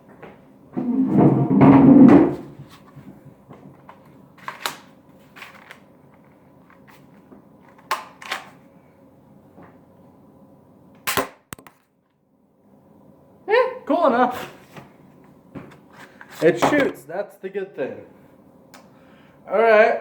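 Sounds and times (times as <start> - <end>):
toy pistol firing snap: 11.1 - 11.7.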